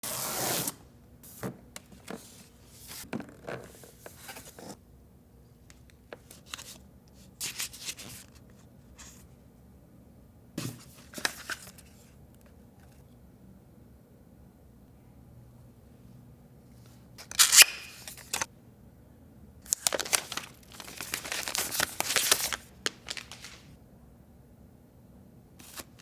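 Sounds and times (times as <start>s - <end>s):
paper strip tearing: 17.3s - 18.4s
packaging rustling and crinkling: 19.7s - 23.8s.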